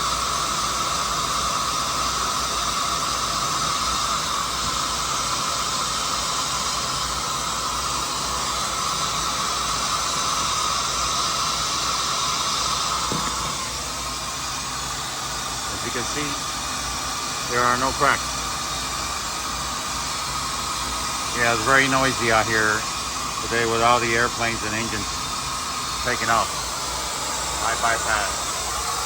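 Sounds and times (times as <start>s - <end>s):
jet engines hissing: 0.0s - 29.0s.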